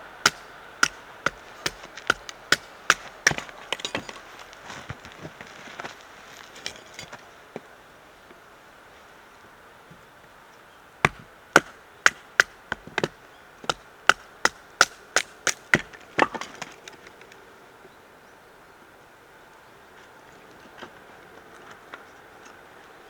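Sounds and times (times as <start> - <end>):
wood chopping strikes: 0.2 - 4.6, 11.0 - 17.0.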